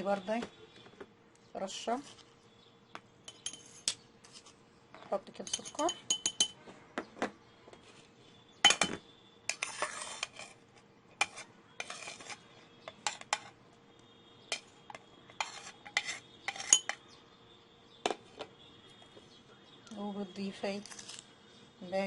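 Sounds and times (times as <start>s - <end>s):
metal spoon clinking on glass jar: 3.3s - 4.0s, 5.4s - 6.6s, 15.4s - 17.0s
spoon scraping in jar: 3.3s - 4.6s, 5.2s - 6.6s, 8.6s - 13.6s, 14.4s - 17.1s, 20.8s - 21.2s.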